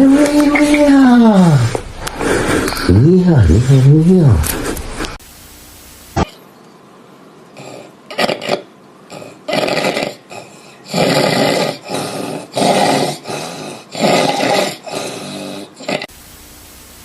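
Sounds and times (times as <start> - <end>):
person snoring: 9.1 - 16.1.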